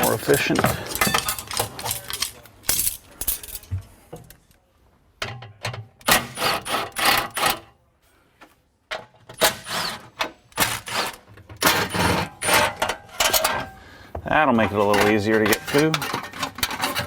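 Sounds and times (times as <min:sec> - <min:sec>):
hand tools clicking on metal: 0:00.0 - 0:03.7, 0:14.8 - 0:17.0.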